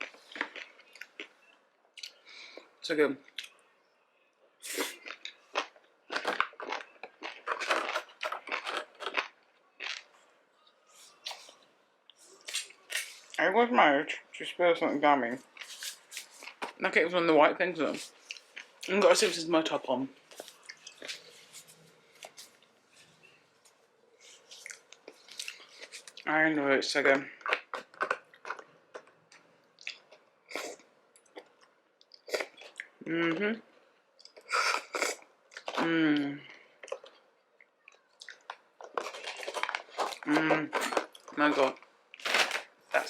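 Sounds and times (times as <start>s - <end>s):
faint chewing: 20.3s - 26.3s, 33.9s - 42.2s.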